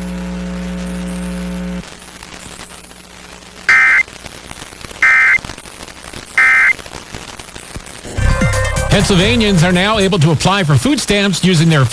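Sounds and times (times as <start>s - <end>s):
faint static hiss: 0.0s - 11.9s
warbling high data tones: 3.7s - 4.0s, 5.0s - 5.4s, 6.4s - 6.8s
low electronic buzz: 8.0s - 10.4s.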